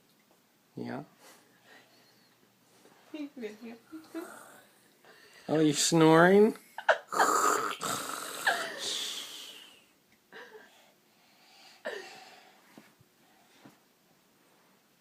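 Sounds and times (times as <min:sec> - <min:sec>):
child fake-snoring: 0:04.1 - 0:04.8, 0:07.1 - 0:09.8.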